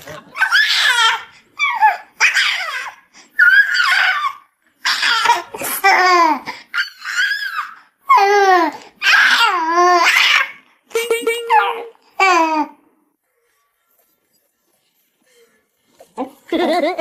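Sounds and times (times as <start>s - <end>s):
baby laughing and squealing: 0.3s - 10.6s.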